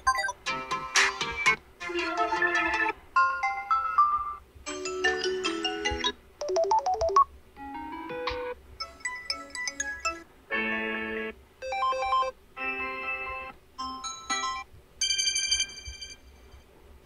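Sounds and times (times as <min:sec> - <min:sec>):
phone ringtone melodies: 0:03.2 - 0:07.2, 0:13.8 - 0:16.3.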